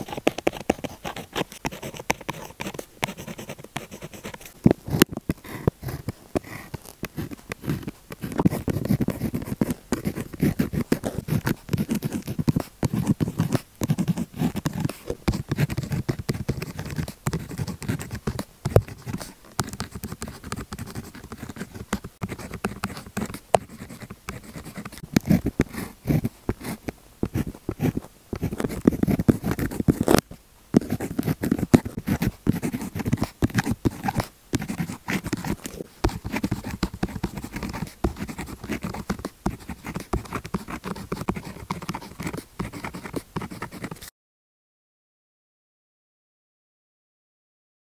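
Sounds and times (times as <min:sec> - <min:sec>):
gel pen scratching on paper: 0:00.0 - 0:44.1.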